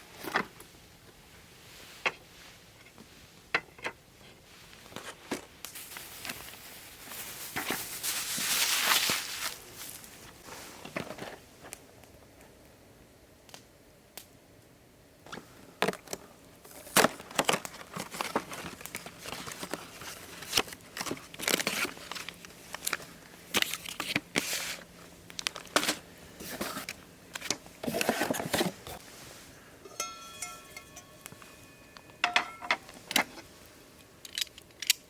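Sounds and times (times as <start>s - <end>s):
packaging rustling and crinkling: 4.7s - 11.7s, 15.8s - 29.4s.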